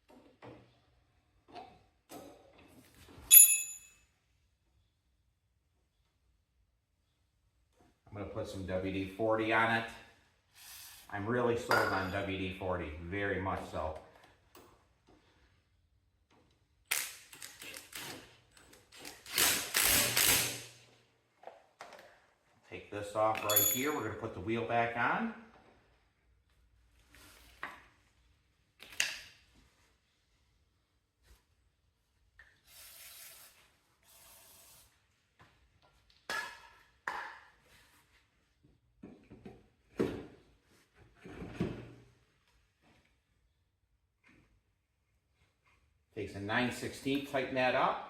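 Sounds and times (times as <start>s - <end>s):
sharp metal clanks: 23.4s - 24.1s.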